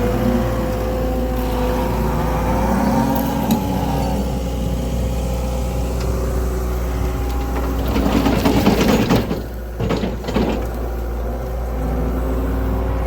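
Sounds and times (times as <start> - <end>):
diesel engine running: 0.0 - 13.0
screening bucket rattling and clatter: 7.1 - 11.3.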